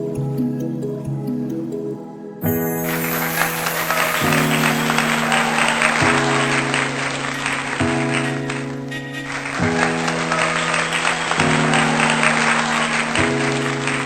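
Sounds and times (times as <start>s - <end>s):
sustained music chords: 0.0s - 14.0s
hissing upper layer: 2.7s - 7.3s.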